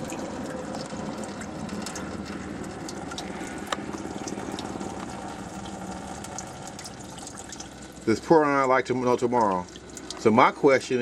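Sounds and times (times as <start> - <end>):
water running and splashing: 0.0 - 10.4.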